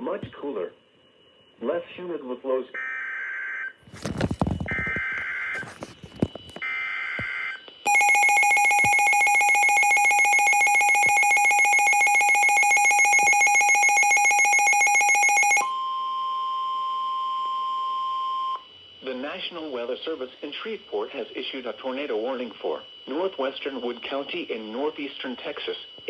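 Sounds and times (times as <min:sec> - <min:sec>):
steady warning alarm tone: 0:00.0 - 0:26.0
pulsing electronic alert alarm: 0:02.8 - 0:17.0.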